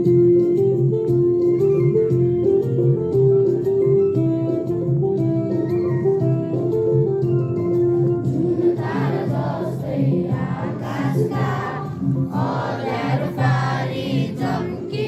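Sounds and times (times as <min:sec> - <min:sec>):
instrumental accompaniment: 0:00.0 - 0:15.0
group singing: 0:08.3 - 0:15.0.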